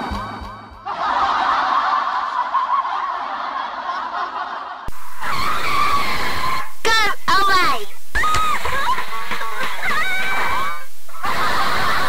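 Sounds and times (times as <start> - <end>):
cartoon voice laughing: 7.6 - 12.0.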